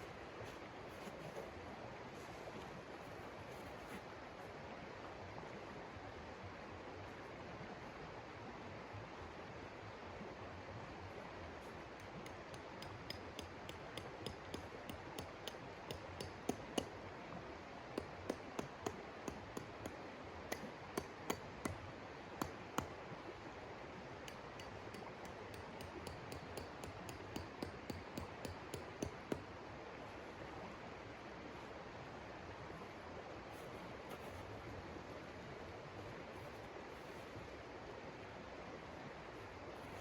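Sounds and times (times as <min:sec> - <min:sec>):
light sharp clicks and taps: 0:12.0 - 0:16.9, 0:24.2 - 0:29.5.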